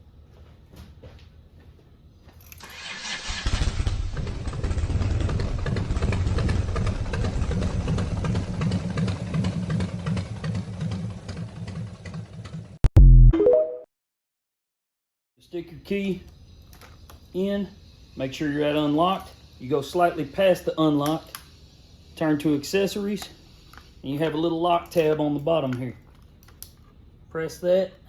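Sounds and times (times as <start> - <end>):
motorcycle engine starting and running: 2.4 - 12.8.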